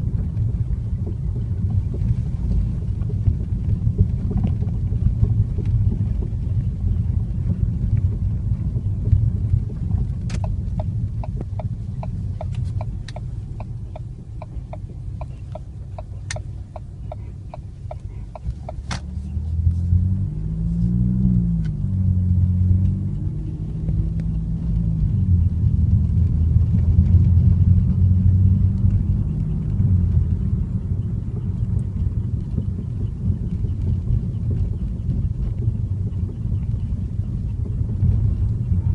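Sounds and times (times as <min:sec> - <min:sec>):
car engine rumble: 0:00.0 - 0:38.9
light evenly spaced ticks: 0:00.1 - 0:19.9.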